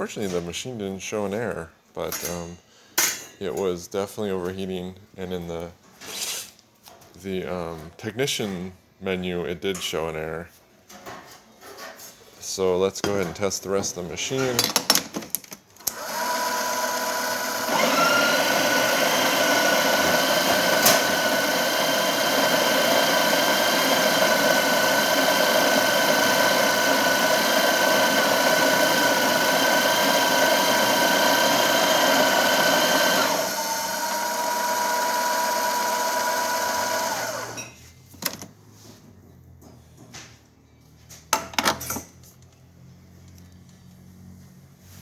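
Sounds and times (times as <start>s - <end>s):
grinder motor whining: 15.9s - 37.7s.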